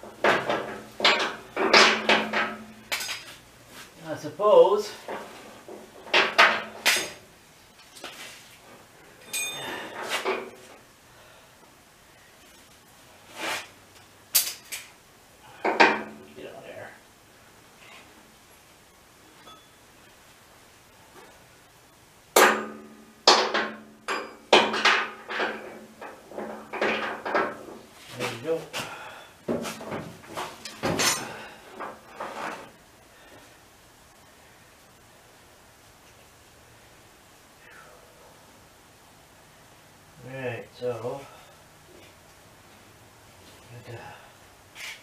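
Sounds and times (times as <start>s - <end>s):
metal parts clanking and knocking: 0.2s - 3.3s, 29.8s - 32.6s.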